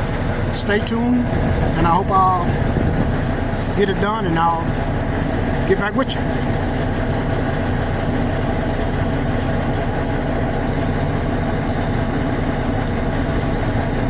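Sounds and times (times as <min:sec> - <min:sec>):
diesel engine idling: 0:00.0 - 0:14.0.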